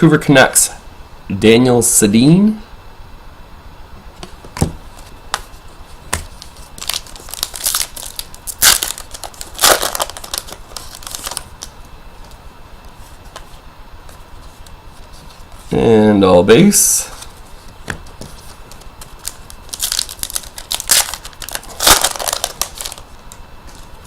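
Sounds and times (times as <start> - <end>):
card pack wrapper crinkling: 6.2 - 12.4, 18.3 - 24.0.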